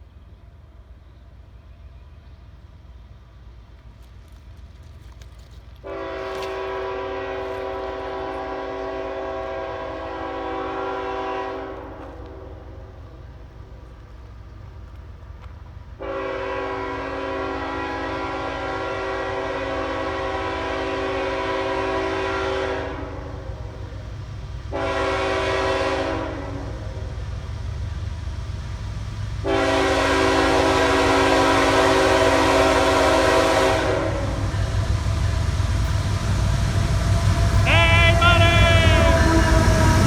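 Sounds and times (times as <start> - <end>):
low locomotive rumble: 0.0 - 40.0
locomotive air horn blasts: 5.8 - 12.7, 16.0 - 23.8, 24.7 - 27.0, 29.4 - 35.0, 37.4 - 40.0.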